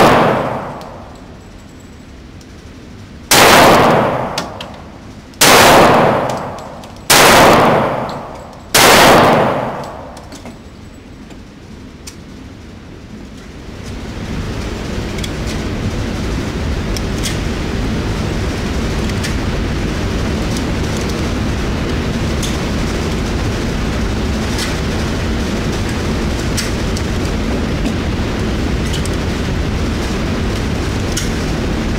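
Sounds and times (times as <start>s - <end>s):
pistol shots echoing: 0.0s - 1.1s, 3.3s - 4.8s, 5.4s - 10.3s
steady rushing noise: 2.2s - 31.9s.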